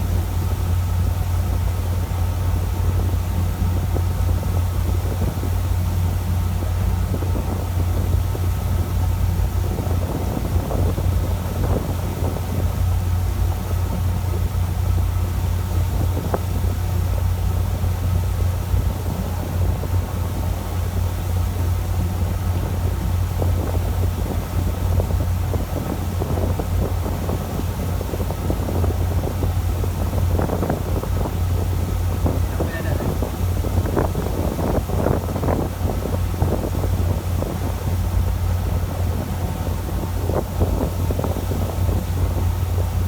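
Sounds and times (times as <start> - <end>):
boat engine droning: 0.0 - 43.0
wind buffeting microphone: 0.0 - 43.0.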